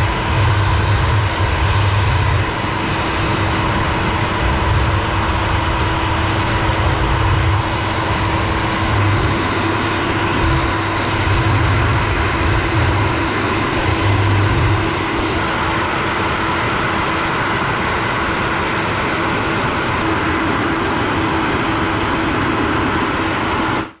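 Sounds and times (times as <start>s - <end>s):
air buffeting on microphone: 0.0s - 17.5s
hair dryer running: 0.0s - 24.0s.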